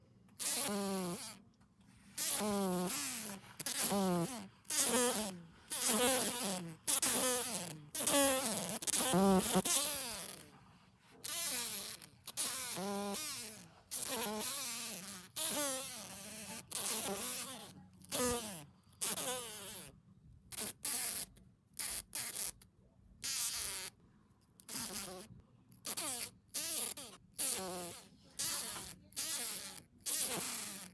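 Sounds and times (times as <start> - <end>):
fly buzzing: 2.2 - 10.4.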